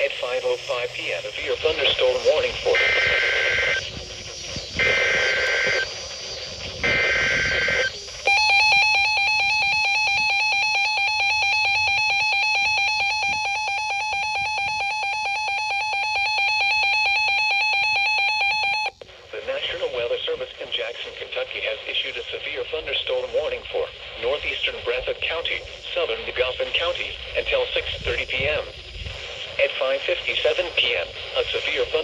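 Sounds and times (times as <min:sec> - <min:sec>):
harsh steady alert tone: 0:00.0 - 0:04.0, 0:04.7 - 0:06.0, 0:06.8 - 0:19.0
buzzy warbling data bursts: 0:00.0 - 0:19.0.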